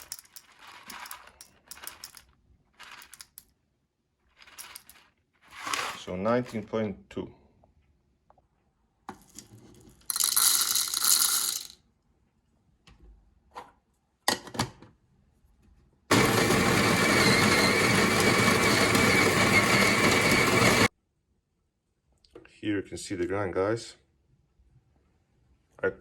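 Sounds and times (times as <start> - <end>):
coffee beans rattling into grinder: 0.0 - 3.4, 4.3 - 6.1, 10.1 - 11.8, 16.1 - 20.9
electric coffee grinder running: 16.1 - 20.9.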